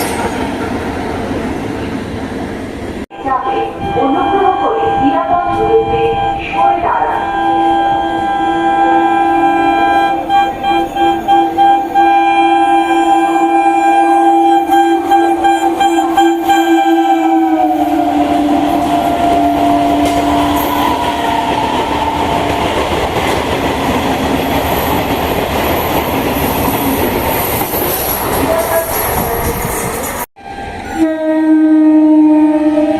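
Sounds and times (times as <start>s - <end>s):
rush of passing train coaches: 0.0s - 32.9s
train horn blast: 3.1s - 22.6s, 30.4s - 32.9s.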